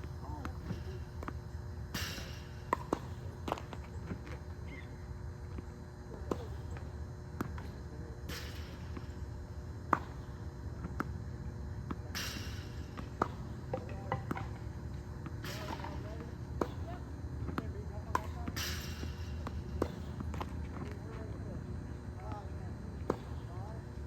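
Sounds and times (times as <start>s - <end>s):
tennis balls bouncing: 0.0s - 7.8s, 9.8s - 11.2s, 12.7s - 21.1s, 23.0s - 23.5s
racket striking ball: 0.3s - 3.8s, 9.9s - 10.3s, 12.4s - 20.5s.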